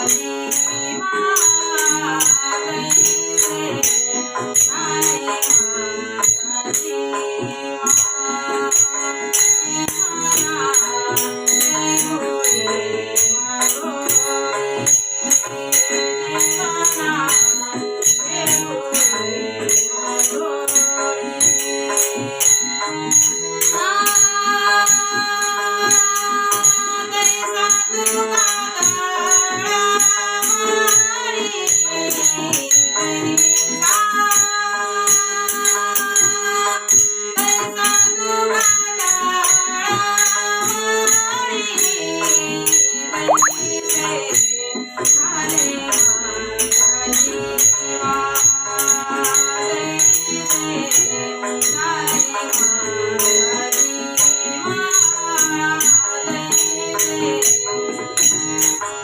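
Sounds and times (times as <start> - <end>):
melodic instrumental music: 0.0 - 24.3, 42.6 - 48.7
rattling percussion beat: 41.8 - 54.4.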